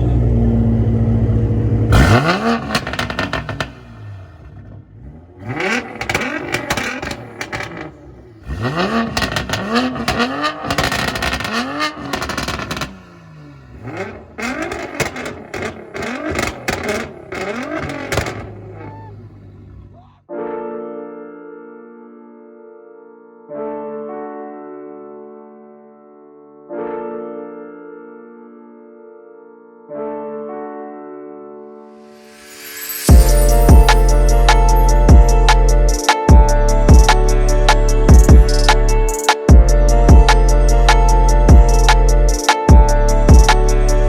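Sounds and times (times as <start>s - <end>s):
car engine revving in blips: 0.0s - 19.9s, 39.7s - 44.0s
exhaust crackles and pops: 1.9s - 3.9s, 5.4s - 18.9s.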